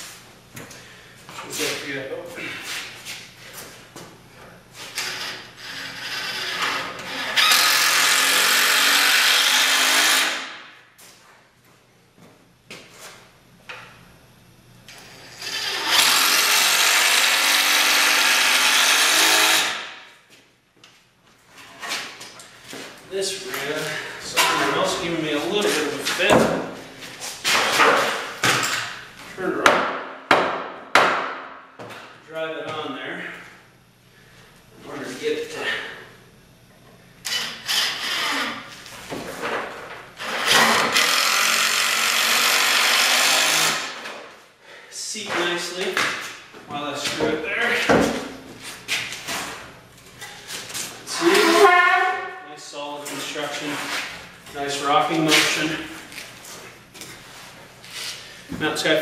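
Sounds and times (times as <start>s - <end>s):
power drill driving screw into wood: 5.0s - 10.6s, 15.4s - 19.9s, 37.3s - 38.6s, 40.2s - 44.1s.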